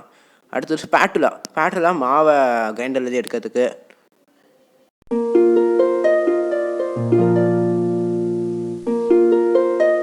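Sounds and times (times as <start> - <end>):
plucked string melody with bass: 5.3 - 10.0.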